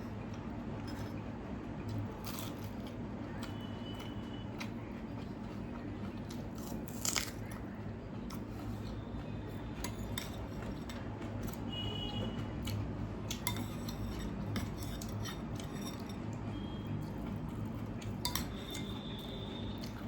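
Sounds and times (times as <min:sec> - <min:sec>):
person eating crunchily: 0:00.0 - 0:11.7.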